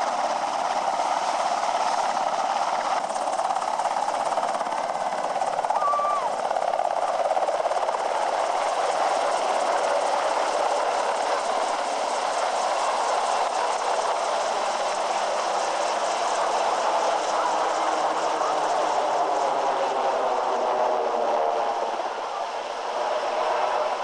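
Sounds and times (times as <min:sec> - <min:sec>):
helicopter rotor and turbine noise: 0:00.0 - 0:24.0.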